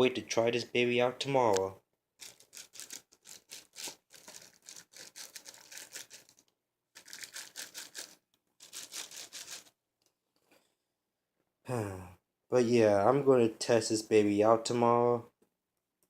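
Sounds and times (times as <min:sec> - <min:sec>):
packaging rustling and clicking: 0:02.2 - 0:09.7.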